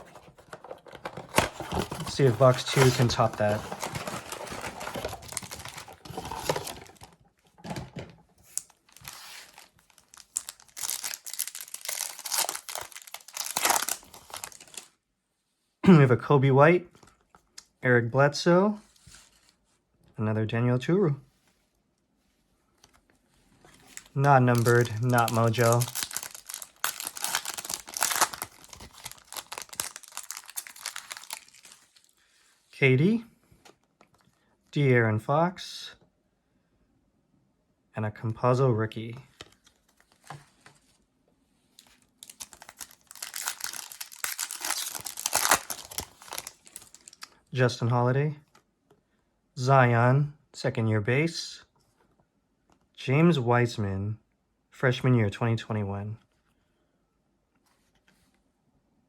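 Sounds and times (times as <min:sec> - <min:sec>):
faint handling sounds: 0:00.0 - 0:14.9, 0:18.7 - 0:20.2, 0:21.2 - 0:32.8, 0:39.2 - 0:47.5, 0:57.5 - 0:58.5
plastic wrap crinkling and tearing: 0:01.3 - 0:07.2, 0:08.5 - 0:14.9, 0:23.8 - 0:32.1, 0:41.8 - 0:47.4.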